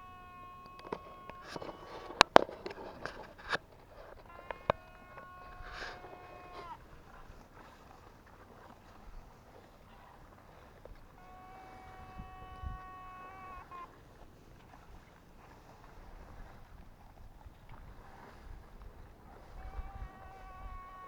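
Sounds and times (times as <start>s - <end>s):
electric whine: 4.0s - 6.8s.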